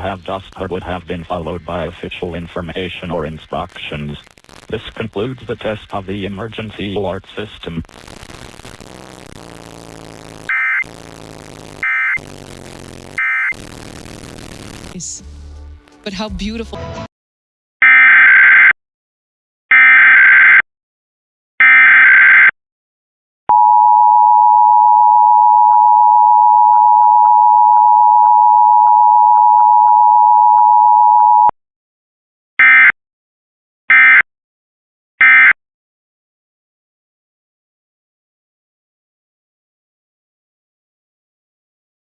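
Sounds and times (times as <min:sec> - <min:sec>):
squawking digital bursts: 0:07.9 - 0:15.0.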